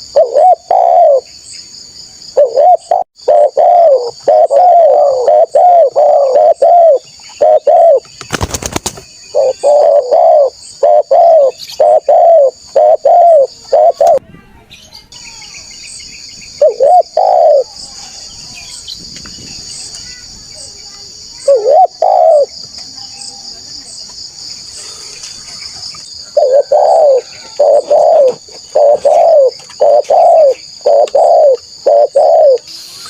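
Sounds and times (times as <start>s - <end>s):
dove cooing: 0.0s - 1.3s, 2.4s - 8.0s, 9.3s - 14.2s, 16.6s - 17.7s, 21.4s - 22.6s, 26.2s - 32.7s
high insect drone: 0.0s - 14.2s, 15.2s - 33.0s.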